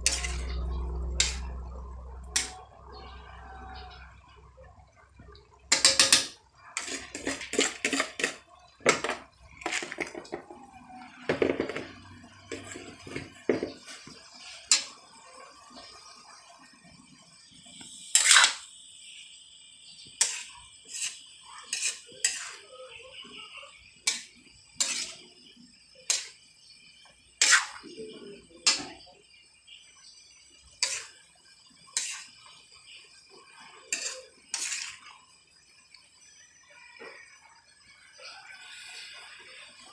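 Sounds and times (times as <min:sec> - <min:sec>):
metal utensils clinking on dishes: 0:00.0 - 0:01.5, 0:02.4 - 0:02.6, 0:05.7 - 0:10.4, 0:33.8 - 0:35.1.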